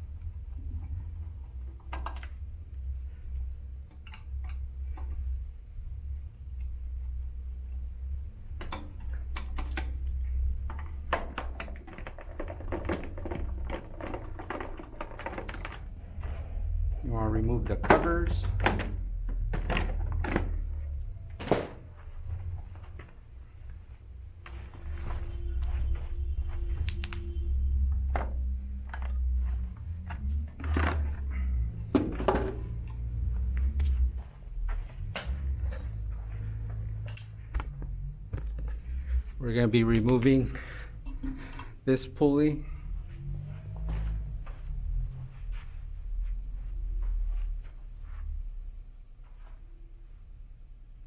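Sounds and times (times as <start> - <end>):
steady low hum: 0.0 - 51.0
plastic covers clicking and rattling: 8.6 - 16.3, 17.6 - 21.9
steady low rumble: 15.6 - 51.0.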